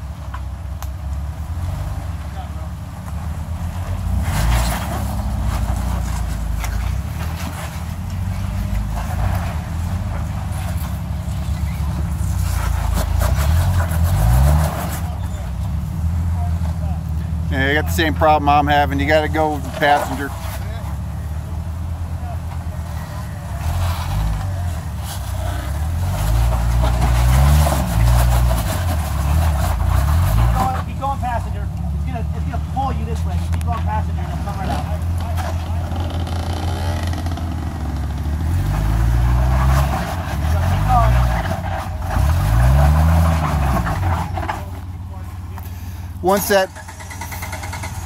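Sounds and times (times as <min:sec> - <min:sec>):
vehicle engine rumbling: 0:00.0 - 0:48.0
knocks and scrapes on rocks: 0:04.2 - 0:15.1, 0:23.7 - 0:31.0.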